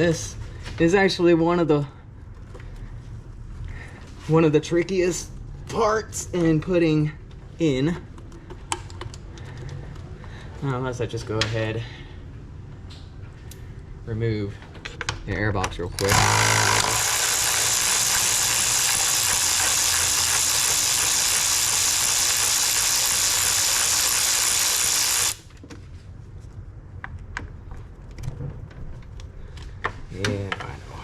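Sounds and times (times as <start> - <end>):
power drill running: 16.0 - 25.5.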